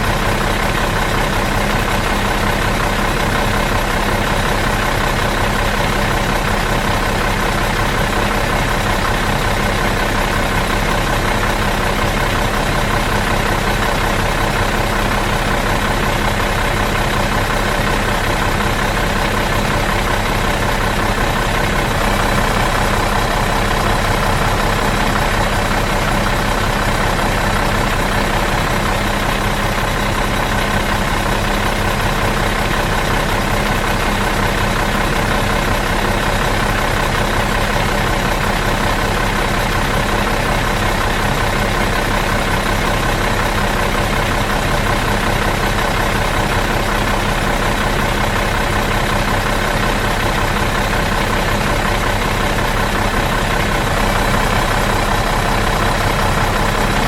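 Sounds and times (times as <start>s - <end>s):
bus engine idling: 0.0s - 57.0s.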